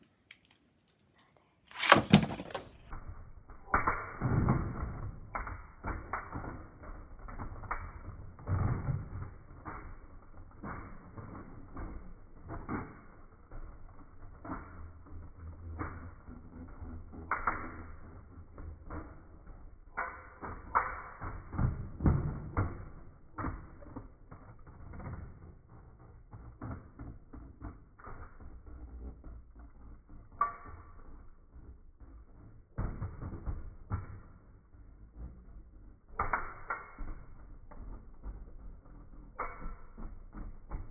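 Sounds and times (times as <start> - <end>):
box rustling and knocking: 1.7 - 2.7.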